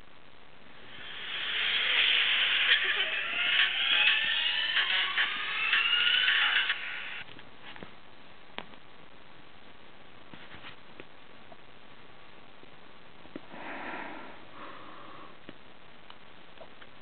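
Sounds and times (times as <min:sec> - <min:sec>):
steady hiss: 0:00.0 - 0:08.4, 0:09.0 - 0:17.0
person sniffing: 0:13.5 - 0:15.4.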